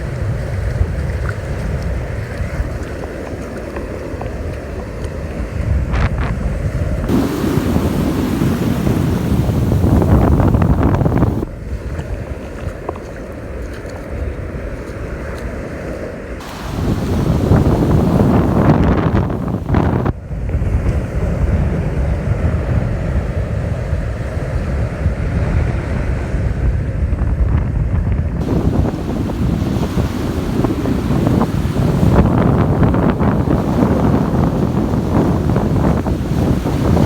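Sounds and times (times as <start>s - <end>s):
wind buffeting microphone: 0.0s - 12.9s, 16.4s - 37.0s
surf breaking on beach: 3.7s - 12.2s, 16.4s - 23.9s, 28.4s - 37.0s.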